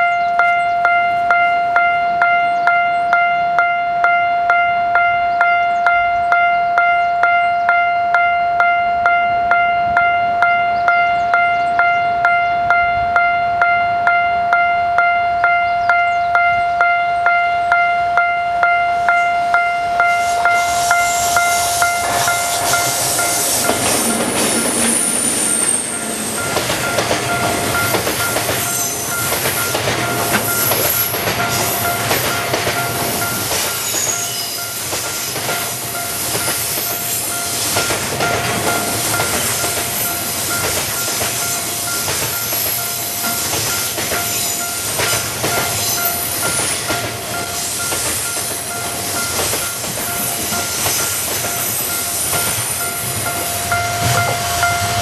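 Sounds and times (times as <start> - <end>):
level crossing warning bell: 0.0 - 55.0
train wheels clacking on rails: 14.6 - 55.0
high wheel squeals: 19.1 - 38.0, 38.7 - 55.0.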